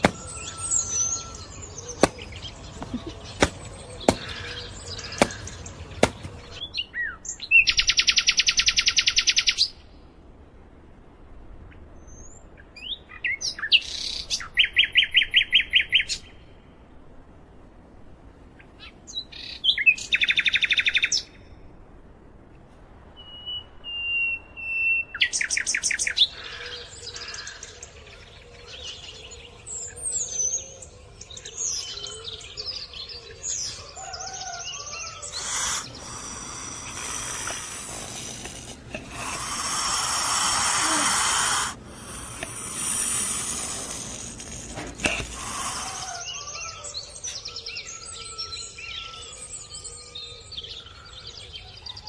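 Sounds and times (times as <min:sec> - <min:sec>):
rough rushing noise: 0:00.0 - 0:06.6, 0:35.4 - 0:46.2
birds trilling chirps: 0:00.0 - 0:09.8, 0:24.4 - 0:52.0.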